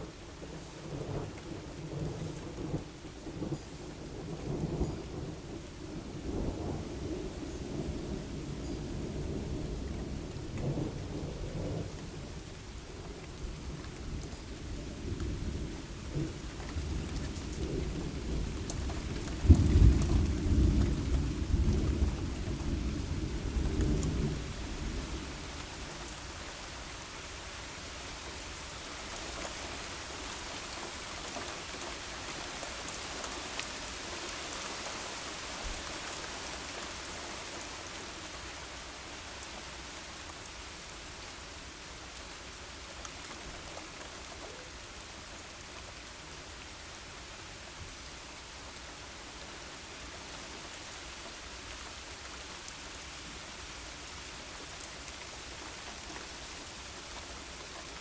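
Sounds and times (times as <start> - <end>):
rain falling: 0.0 - 58.0.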